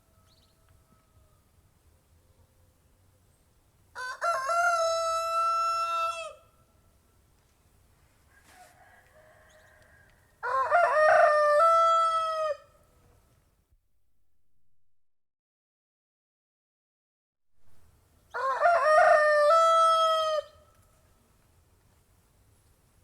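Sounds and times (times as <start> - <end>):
rooster crowing: 0.0 - 1.4, 4.0 - 6.5, 8.3 - 12.8, 18.3 - 20.7.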